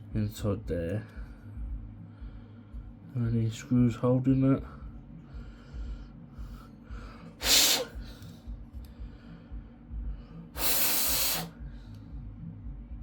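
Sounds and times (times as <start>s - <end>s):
person blowing out air: 7.4s - 8.0s, 10.6s - 11.6s.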